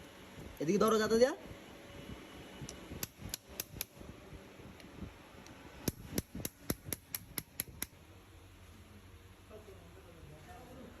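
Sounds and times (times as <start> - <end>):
sharp knocks of tools: 5.8 - 8.0.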